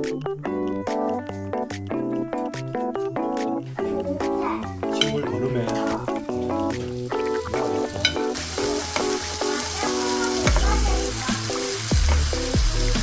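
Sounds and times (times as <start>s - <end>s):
background music with steady beat: 0.0s - 13.0s
food sizzling in a frying pan: 4.3s - 13.0s.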